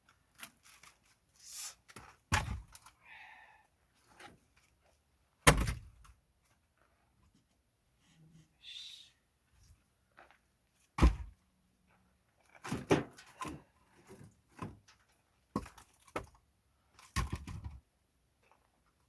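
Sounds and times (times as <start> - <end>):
logs being stacked: 1.9 - 2.9, 11.0 - 11.3, 12.5 - 16.4, 17.0 - 17.8.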